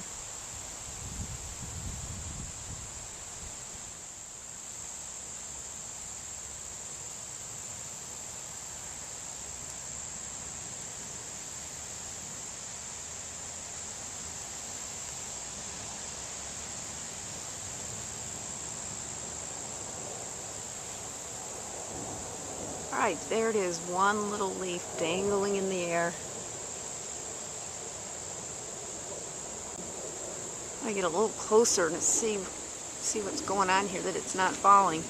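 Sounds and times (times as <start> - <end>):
high-pitched insect chorus: 0.0 - 35.0
faint wind rush: 0.6 - 4.0, 21.3 - 26.7, 28.0 - 35.0.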